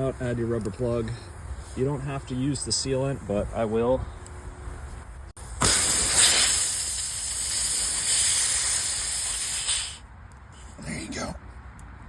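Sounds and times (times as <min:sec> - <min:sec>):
pressurised air hissing: 0:05.4 - 0:10.0.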